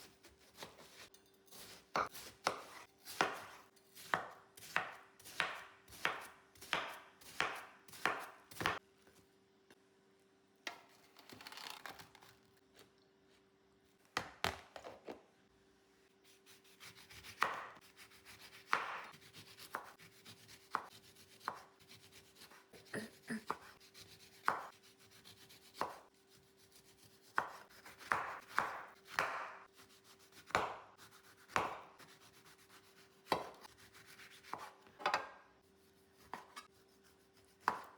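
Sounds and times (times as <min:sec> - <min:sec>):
knife chopping on cutting board: 0:00.0 - 0:08.8, 0:16.7 - 0:22.6, 0:23.4 - 0:26.1, 0:26.7 - 0:35.3, 0:36.2 - 0:37.9.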